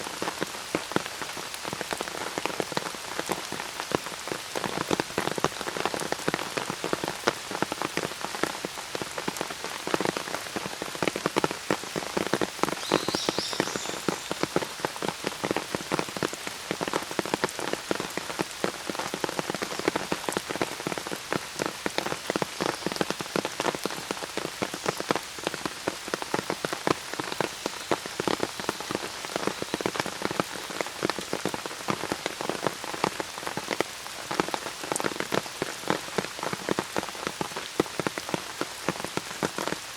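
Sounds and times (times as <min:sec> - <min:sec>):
rain pattering on an umbrella: 0:00.0 - 0:39.9
high bird chirp: 0:12.8 - 0:14.3.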